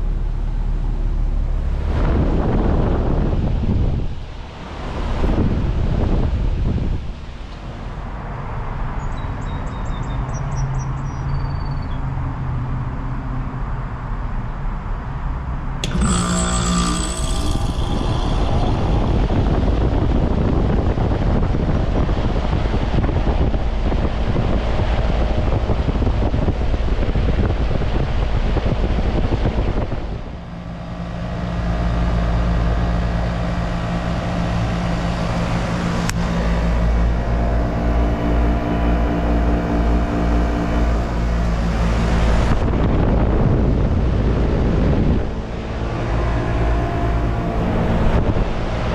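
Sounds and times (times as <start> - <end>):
compressor and fan running: 0.0 - 9.0, 15.4 - 48.9
heat pump unit humming: 15.8 - 48.9.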